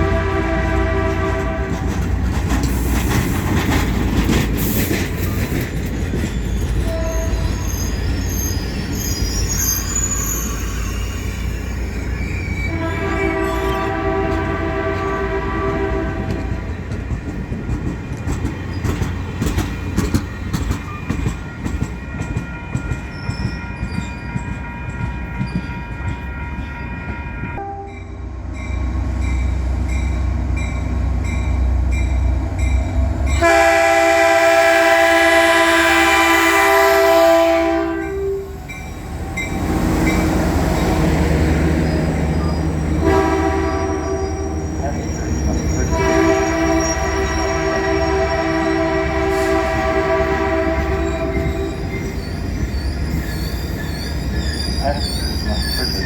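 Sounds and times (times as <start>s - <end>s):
train horn: 0.0s - 2.1s, 6.8s - 7.7s, 12.7s - 16.7s, 22.0s - 28.2s, 33.3s - 38.7s, 39.3s - 52.1s
train rumbling past: 0.0s - 56.0s
wheels clattering over rail joints: 0.8s - 8.9s, 15.8s - 26.2s
high wheel squeal: 5.2s - 14.1s, 20.8s - 27.6s, 38.0s - 56.0s.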